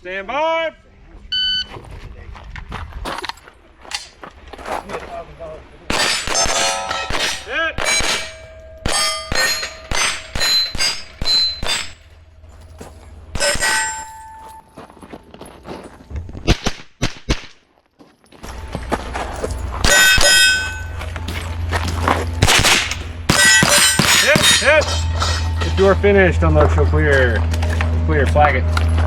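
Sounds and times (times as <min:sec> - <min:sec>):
bullets ringing steel targets: 0:05.9 - 0:14.8, 0:19.5 - 0:26.5
rifle shots: 0:22.4 - 0:24.7.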